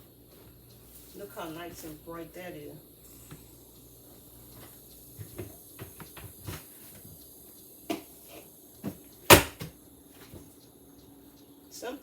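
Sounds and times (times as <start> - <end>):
sharp knock: 9.3 - 9.7.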